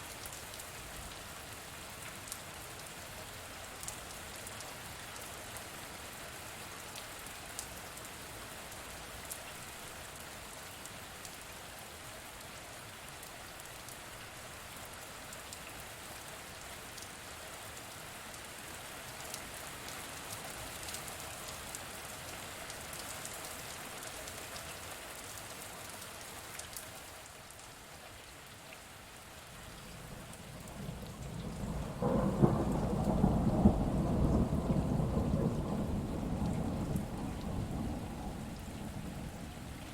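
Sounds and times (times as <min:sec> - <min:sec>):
steady rain falling: 0:00.0 - 0:39.9
raindrops ticking: 0:29.9 - 0:39.9
thunder rumbling: 0:30.1 - 0:39.9.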